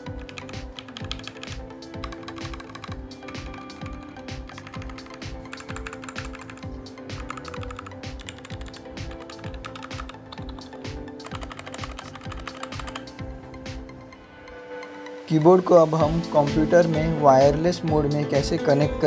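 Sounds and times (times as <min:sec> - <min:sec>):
background music with steady beat: 0:00.0 - 0:19.0
mechanical keyboard keys clicking: 0:00.2 - 0:03.6, 0:04.4 - 0:06.6, 0:07.2 - 0:13.2.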